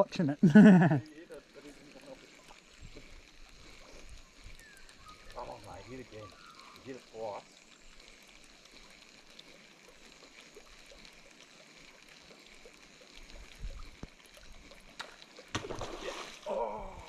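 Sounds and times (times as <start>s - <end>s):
faint water sounds: 0.0s - 17.0s
small ticks: 1.1s - 15.6s.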